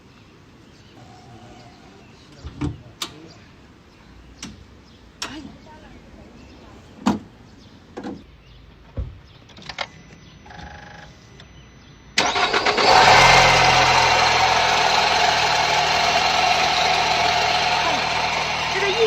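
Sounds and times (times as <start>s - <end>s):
car engine running: 12.2s - 19.0s
engine belt squealing: 12.2s - 19.0s.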